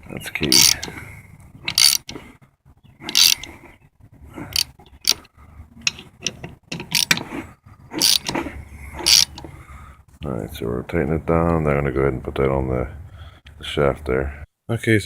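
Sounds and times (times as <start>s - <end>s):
socket ratchet clicking: 0.5s - 0.9s, 1.7s - 2.2s, 3.0s - 3.5s, 4.5s - 5.2s, 5.8s - 7.3s, 8.0s - 8.4s, 9.0s - 9.5s.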